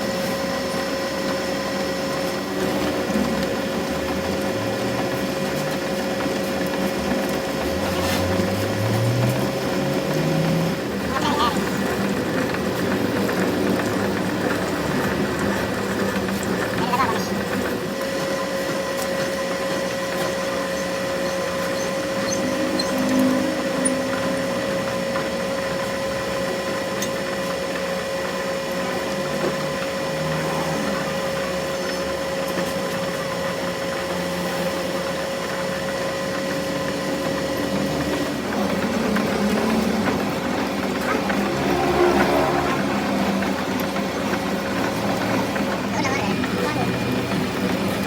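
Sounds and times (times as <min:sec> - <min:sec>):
irregular working noises: 0:00.0 - 0:48.0
workshop machine humming: 0:00.0 - 0:48.0.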